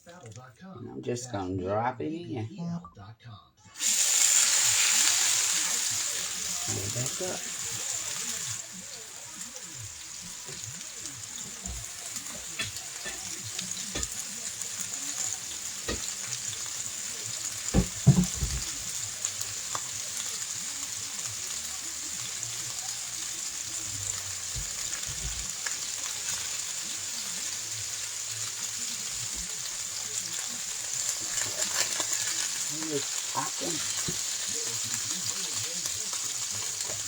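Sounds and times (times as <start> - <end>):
meat sizzling in hot oil: 3.8 - 37.0
knocks against pan: 17.7 - 18.8.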